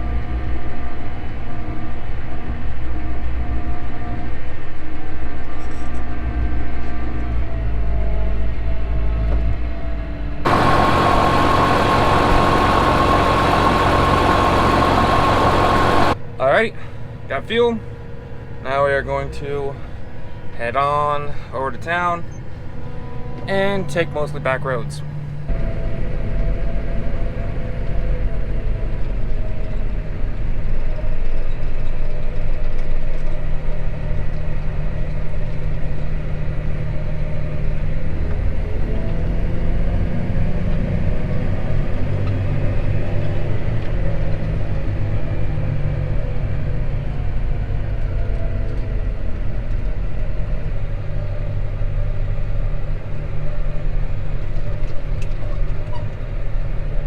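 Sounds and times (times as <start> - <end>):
tractor diesel engine droning: 10.5 - 30.9.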